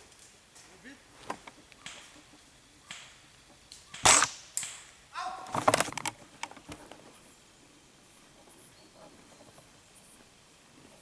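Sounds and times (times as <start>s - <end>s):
airsoft rifle shot crack: 4.0s - 4.9s.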